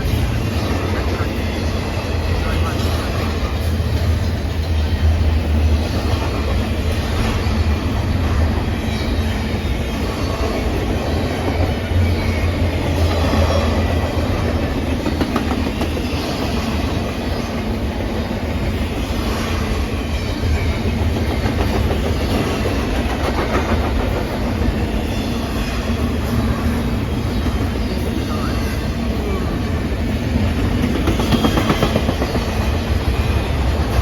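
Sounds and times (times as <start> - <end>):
train rolling past: 0.0 - 34.0
wheel noise on rails: 0.0 - 34.0.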